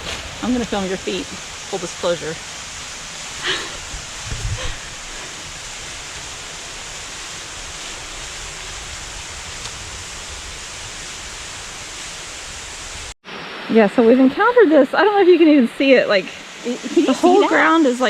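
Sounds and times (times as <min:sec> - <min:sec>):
low bumps: 0:00.0 - 0:11.8
waterfall rushing: 0:00.0 - 0:18.0.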